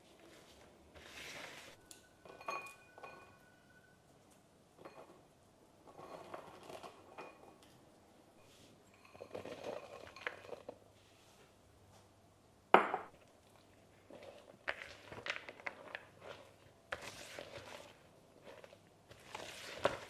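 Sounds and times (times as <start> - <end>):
dishes and cutlery clattering: 1.8 - 3.6.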